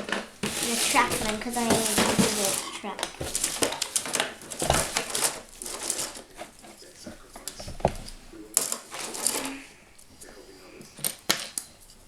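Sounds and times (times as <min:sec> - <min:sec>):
plastic pieces clicking and rattling: 0:00.0 - 0:06.5, 0:11.0 - 0:11.7
rustling: 0:00.0 - 0:12.0.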